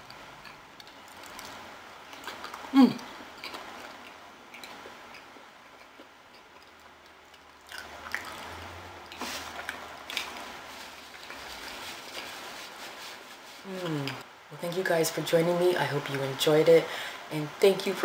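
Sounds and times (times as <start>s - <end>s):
person chewing food: 0.0s - 13.2s.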